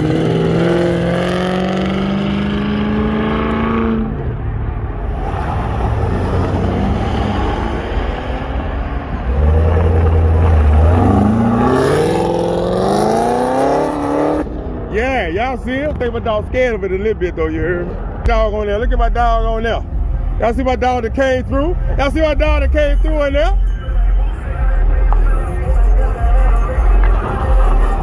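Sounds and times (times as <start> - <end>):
car engine revving hard: 0.0 - 4.2, 9.2 - 14.8.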